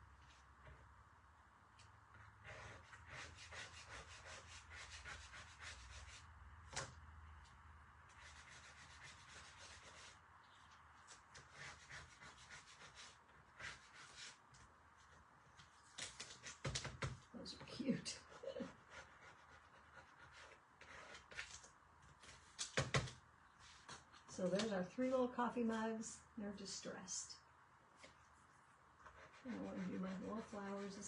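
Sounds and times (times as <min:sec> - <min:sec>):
paint scraper scratching: 0:02.4 - 0:06.2, 0:18.2 - 0:21.5, 0:29.0 - 0:31.0.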